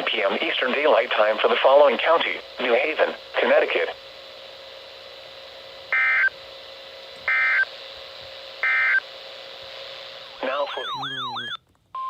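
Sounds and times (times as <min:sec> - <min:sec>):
digital data tone bursts: 0:07.3 - 0:07.7, 0:08.6 - 0:09.0, 0:10.4 - 0:11.6.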